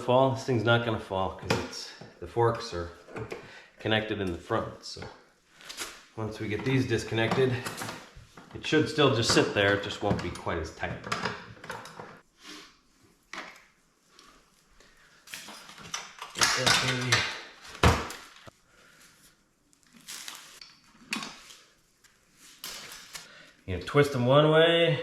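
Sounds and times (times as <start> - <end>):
rustling: 12.2 - 23.5.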